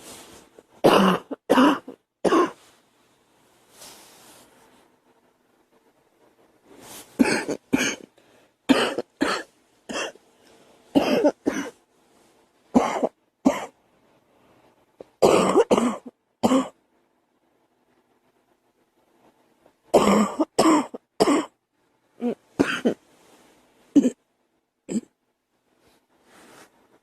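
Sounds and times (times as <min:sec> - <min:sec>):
girl coughing: 0:00.8 - 0:02.6, 0:07.2 - 0:08.1, 0:08.7 - 0:10.2, 0:11.0 - 0:11.8, 0:12.8 - 0:13.8, 0:15.2 - 0:16.8, 0:20.0 - 0:21.6, 0:22.2 - 0:23.0, 0:24.0 - 0:24.2, 0:24.9 - 0:25.1
faint breaths in: 0:08.1 - 0:08.7.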